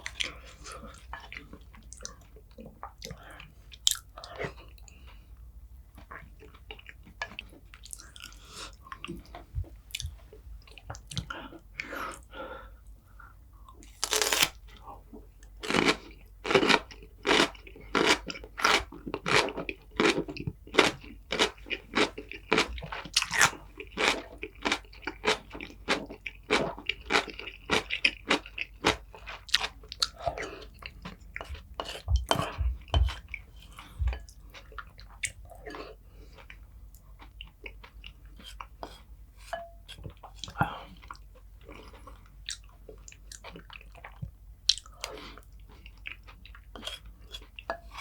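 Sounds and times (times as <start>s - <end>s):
crunchy food chewing: 13.7s - 14.7s, 15.5s - 39.1s, 40.2s - 48.0s.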